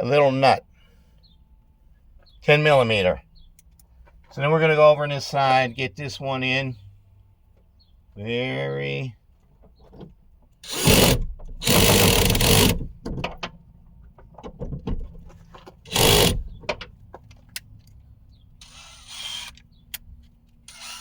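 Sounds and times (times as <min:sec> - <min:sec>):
ratchet wrench turning a bolt: 0:10.6 - 0:12.9, 0:15.9 - 0:16.6, 0:18.6 - 0:21.0.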